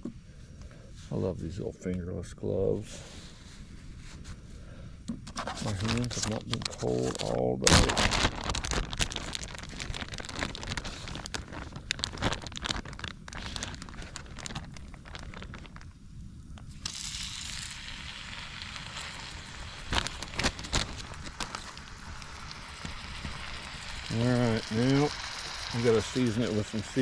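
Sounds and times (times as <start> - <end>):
butter sizzling in a pan: 16.7 - 27.0.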